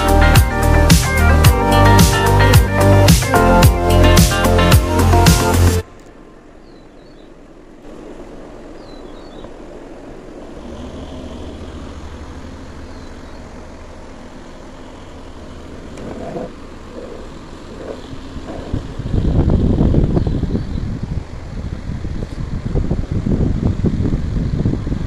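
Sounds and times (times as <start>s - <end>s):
air buffeting microphone: 7.3s - 25.0s
table fan humming: 7.4s - 25.0s.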